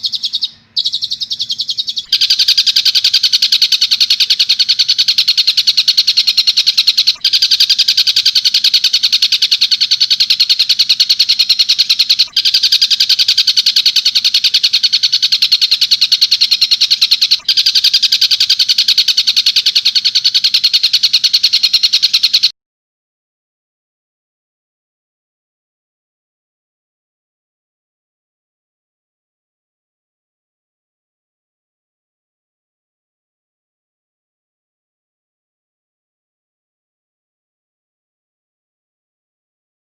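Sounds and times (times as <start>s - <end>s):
bird call rapid shrill chatter: 0.0s - 22.5s.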